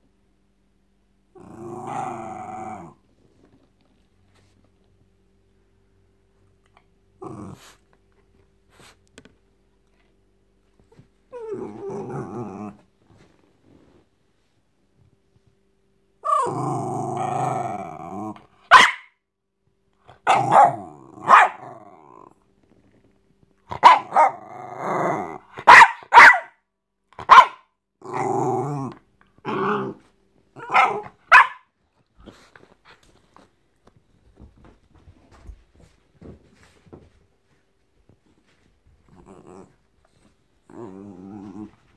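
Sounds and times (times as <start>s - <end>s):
dog growling: 1.3s - 3.0s, 7.2s - 7.8s, 11.3s - 12.9s, 16.2s - 18.5s, 20.3s - 22.4s, 23.7s - 25.6s, 28.0s - 31.2s, 39.1s - 41.9s
dog barking: 18.7s - 19.2s, 20.2s - 21.7s, 23.7s - 24.4s, 25.6s - 26.6s, 27.2s - 27.7s, 30.6s - 31.7s.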